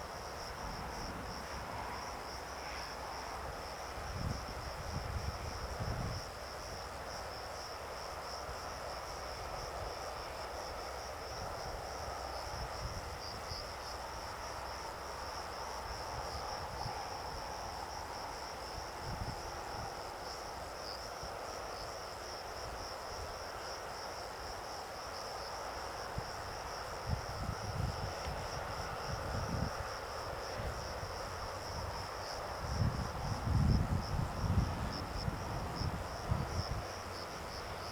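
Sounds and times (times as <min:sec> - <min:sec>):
wind buffeting microphone: 0:03.6 - 0:06.7, 0:27.0 - 0:37.9.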